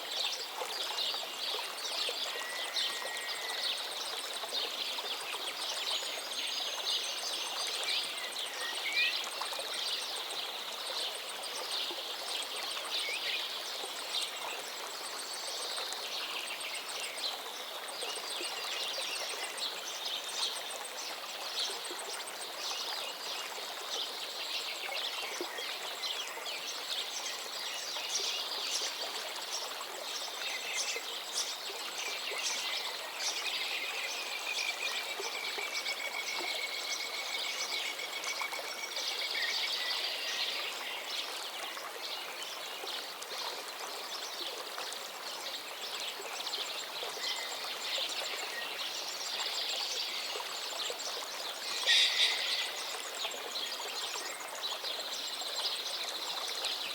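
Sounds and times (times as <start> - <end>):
river water splashing over stones: 36.3 - 56.9
birds chirping: 51.6 - 53.1.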